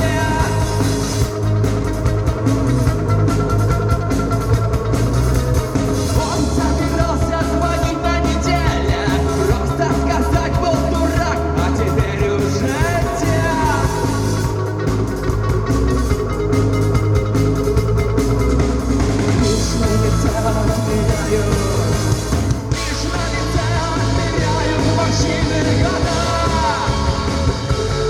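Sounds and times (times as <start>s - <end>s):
rock band playing live: 0.0s - 28.0s
steady drum beat: 0.0s - 28.0s.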